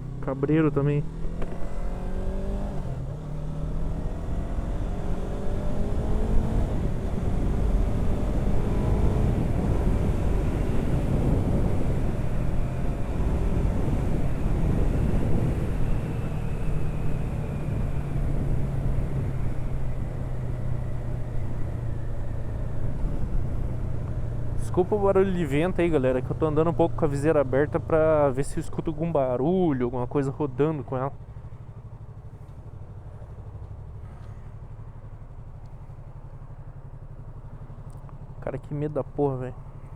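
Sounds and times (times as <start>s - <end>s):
motorcycle engine running: 0.0s - 39.9s
heavy wind noise on microphone: 8.9s - 16.5s.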